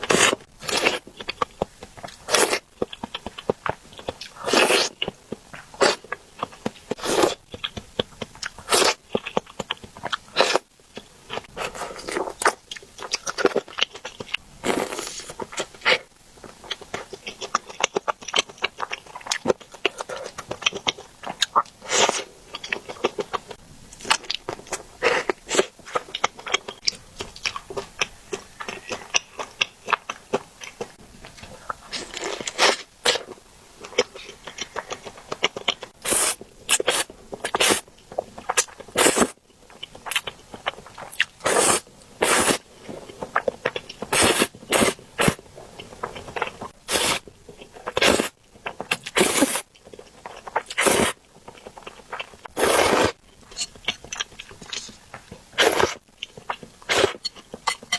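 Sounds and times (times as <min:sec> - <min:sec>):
wet chewing: 0:00.0 - 0:57.9.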